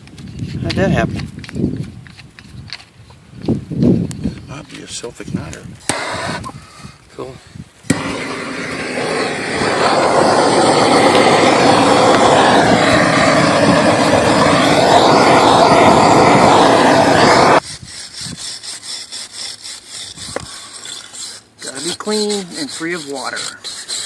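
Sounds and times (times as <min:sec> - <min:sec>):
gas torch rushing: 0:05.8 - 0:06.6, 0:07.8 - 0:17.6.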